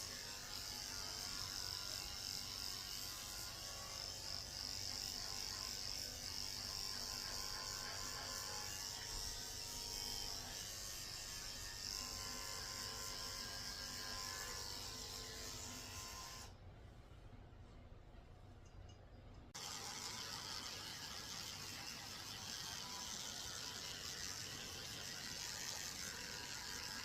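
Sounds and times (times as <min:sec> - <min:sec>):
electric clippers buzzing: 0:00.0 - 0:16.6, 0:19.6 - 0:27.0
quiet background hum: 0:12.0 - 0:19.6.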